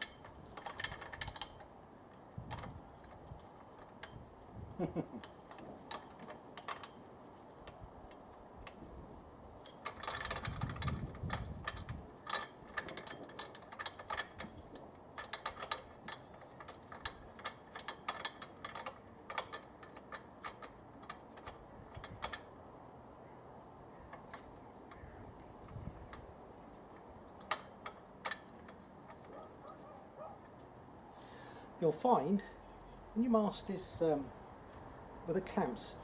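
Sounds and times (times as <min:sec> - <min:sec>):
metal clamps clicking: 0:00.0 - 0:04.2, 0:05.2 - 0:08.8, 0:09.6 - 0:22.6, 0:24.0 - 0:30.9.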